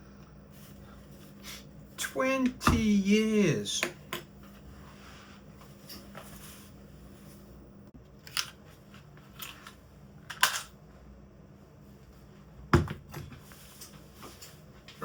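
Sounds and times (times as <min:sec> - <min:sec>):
steady low hum: 0:00.0 - 0:10.2.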